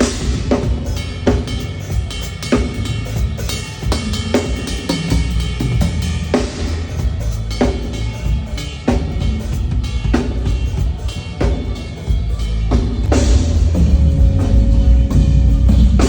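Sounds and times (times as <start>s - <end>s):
drum kit: 0.0s - 16.0s
live band playing: 0.0s - 16.0s
steady low bass: 12.1s - 16.0s.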